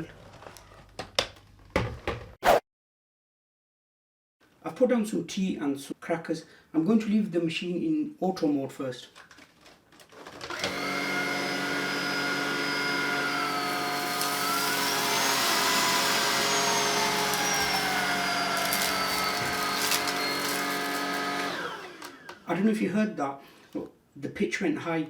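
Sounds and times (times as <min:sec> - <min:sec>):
stick vacuum motor whine: 0:10.4 - 0:22.5.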